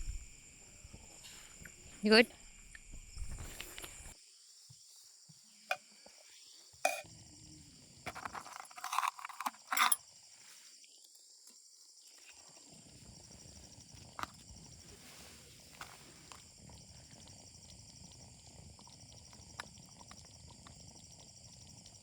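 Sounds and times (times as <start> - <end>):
insects droning: 0.0 - 22.0
utensils clattering: 8.1 - 10.0.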